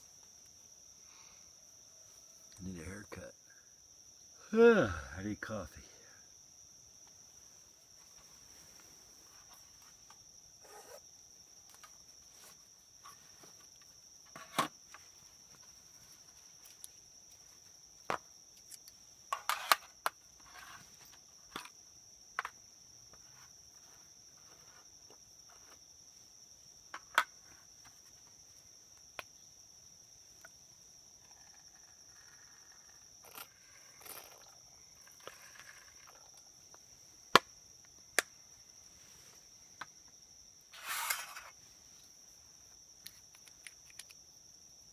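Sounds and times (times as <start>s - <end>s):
crickets chirping: 0.0s - 44.9s
camp gear clicks and knocks: 9.4s - 17.4s, 18.0s - 22.7s, 26.8s - 28.4s, 42.7s - 44.2s.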